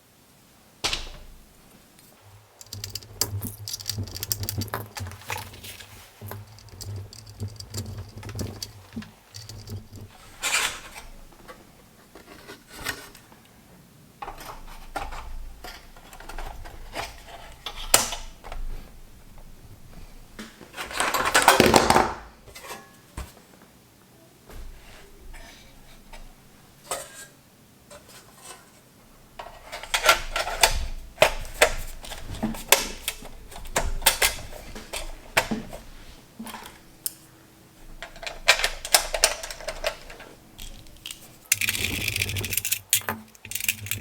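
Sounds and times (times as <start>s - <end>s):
small tools clicking and rattling: 2.4s - 11.3s, 29.4s - 35.8s, 37.9s - 44.0s.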